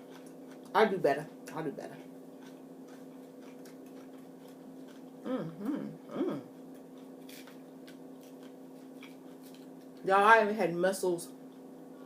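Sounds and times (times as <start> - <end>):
low electrical hum: 0.0 - 12.0
woman humming mmm: 5.2 - 6.5.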